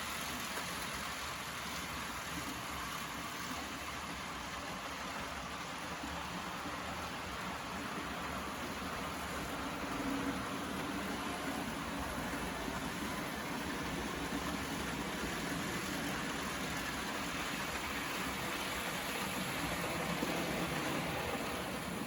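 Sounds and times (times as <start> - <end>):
model train whirring on track: 5.8 - 22.0.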